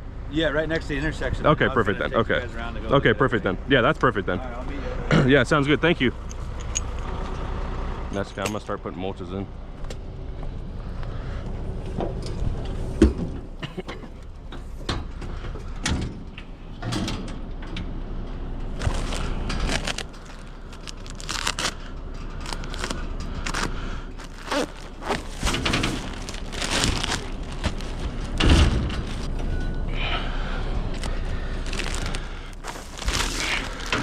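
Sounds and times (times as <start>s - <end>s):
steady low hum: 0.0s - 34.0s
mulch thuds and rustles: 24.2s - 29.3s.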